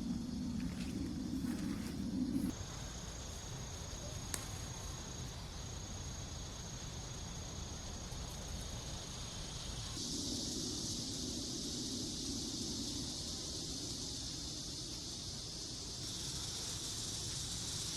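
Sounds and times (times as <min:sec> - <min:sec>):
insect trilling: 0:00.0 - 0:02.7, 0:08.8 - 0:17.9.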